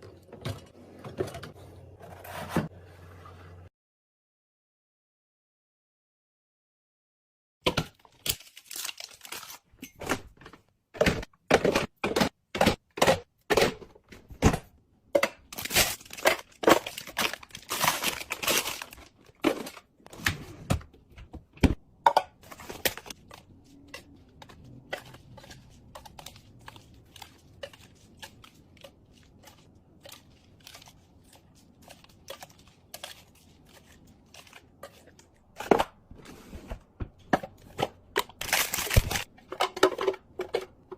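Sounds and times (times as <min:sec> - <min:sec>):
food packaging being handled: 0:07.9 - 0:10.6, 0:15.5 - 0:20.3, 0:37.8 - 0:39.3
wrappers crinkling: 0:15.6 - 0:19.1.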